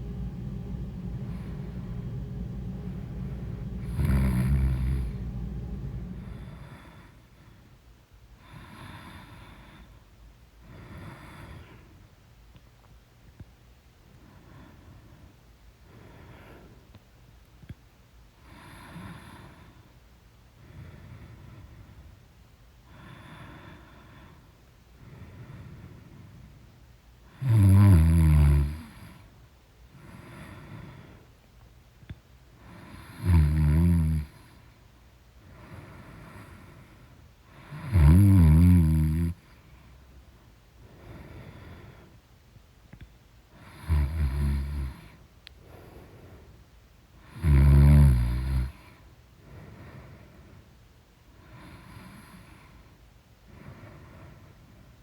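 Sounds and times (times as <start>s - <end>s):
quiet breathing: 0.0s - 12.6s, 14.1s - 55.0s
woman snoring loudly: 3.8s - 7.0s, 27.4s - 29.0s, 32.7s - 34.4s, 37.6s - 39.4s, 43.6s - 45.0s, 47.2s - 48.8s.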